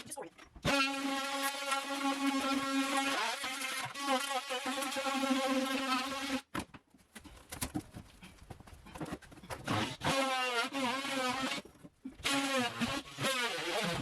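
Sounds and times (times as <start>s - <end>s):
power tool buzzing: 0.6s - 6.5s, 9.6s - 11.6s, 12.2s - 14.0s.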